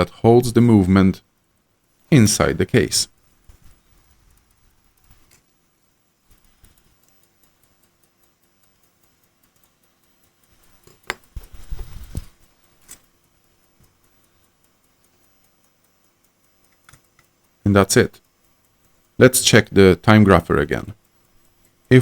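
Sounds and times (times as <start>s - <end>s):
pocket watch ticking: 0.4s - 22.0s
sharp click: 6.3s - 17.5s.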